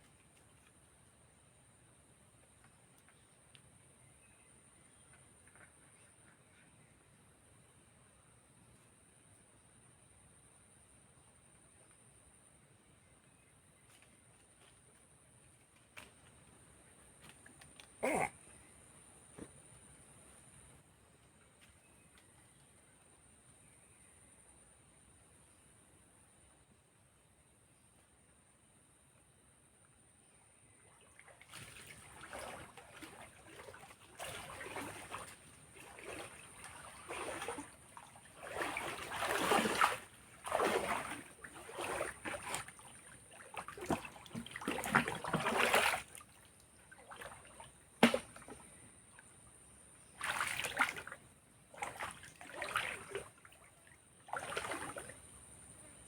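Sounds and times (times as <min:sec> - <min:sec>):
water splashing and sloshing: 0:30.7 - 0:56.0.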